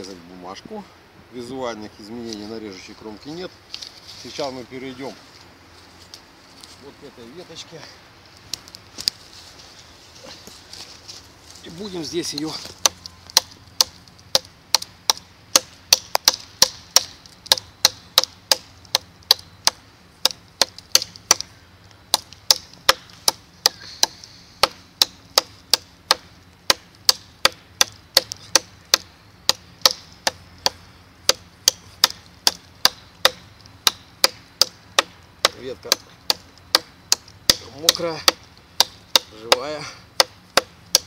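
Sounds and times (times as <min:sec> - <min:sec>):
knife chopping wet branch: 0:12.6 - 0:21.5, 0:22.1 - 0:41.0.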